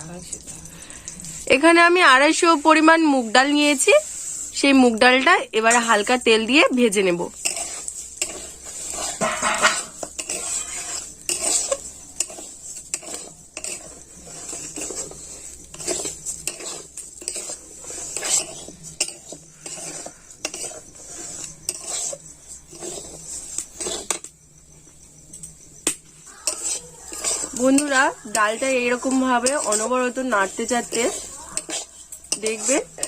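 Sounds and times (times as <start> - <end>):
faint sizzle: 0.0 - 33.0
utensil scraping and knocking pan: 6.9 - 24.3, 26.3 - 33.0.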